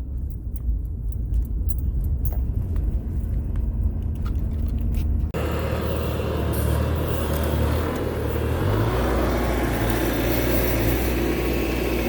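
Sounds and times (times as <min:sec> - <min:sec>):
mini excavator engine running: 0:05.4 - 0:12.0.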